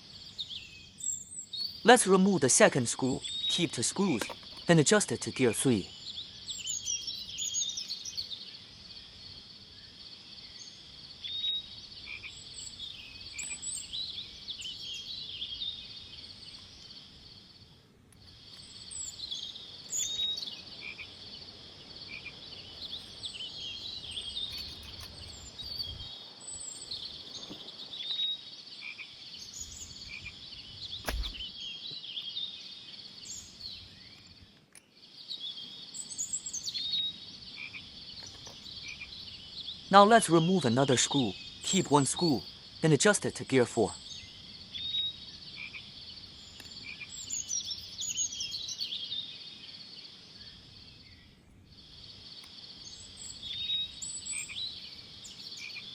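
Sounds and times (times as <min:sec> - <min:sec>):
frog chirps and croaks: 0:12.0 - 0:12.5, 0:20.7 - 0:21.2, 0:22.0 - 0:23.1, 0:28.8 - 0:29.2, 0:30.0 - 0:30.4, 0:37.5 - 0:38.0, 0:38.8 - 0:39.2, 0:45.5 - 0:46.0, 0:46.8 - 0:47.3, 0:53.4 - 0:54.8, 0:55.5 - 0:55.9
sharp knock: 0:31.0 - 0:31.4.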